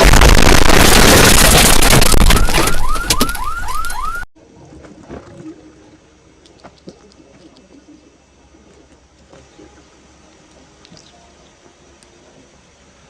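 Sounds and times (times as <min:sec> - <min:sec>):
loud distorted meme sound: 0:00.0 - 0:02.8.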